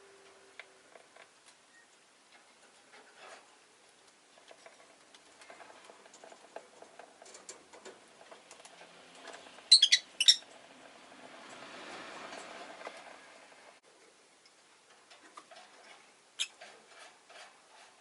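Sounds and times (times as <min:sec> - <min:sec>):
bird chirping: 0:09.7 - 0:10.5.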